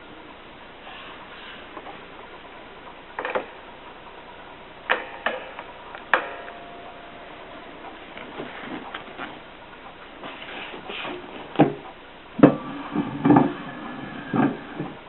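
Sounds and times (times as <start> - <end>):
ringing metal clank: 4.9 - 7.8.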